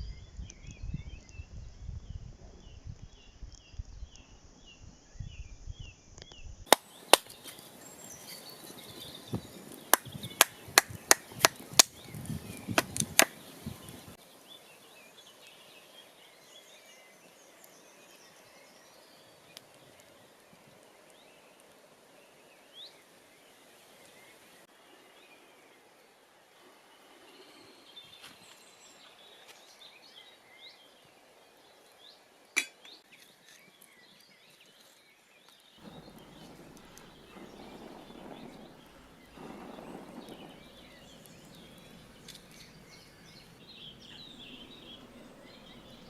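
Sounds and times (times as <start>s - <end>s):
faint bird chirps: 26.9s - 46.0s.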